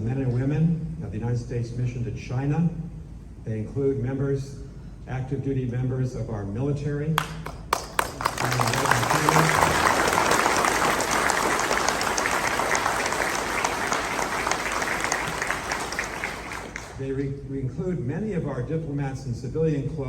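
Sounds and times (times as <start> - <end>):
audience applauding: 7.2 - 17.0.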